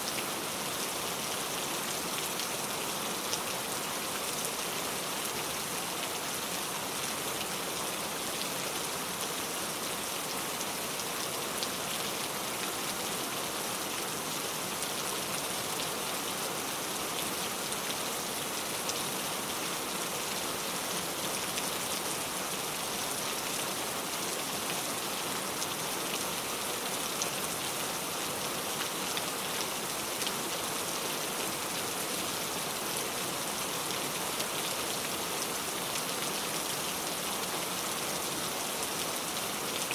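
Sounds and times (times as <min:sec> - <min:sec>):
rain hissing on surfaces: 0:00.0 - 0:39.9.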